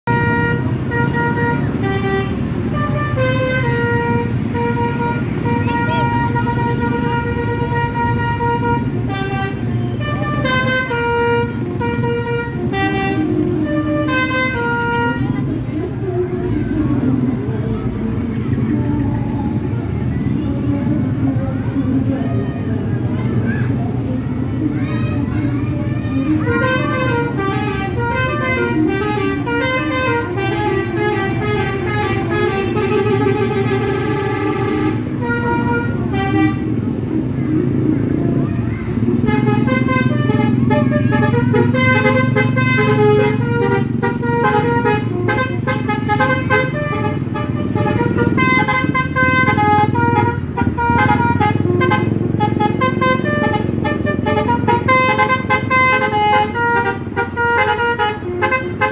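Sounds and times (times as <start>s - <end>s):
bus engine running: 0.0s - 58.9s
musical air horn playing a tune: 0.1s - 15.4s, 26.5s - 36.7s, 39.2s - 58.9s.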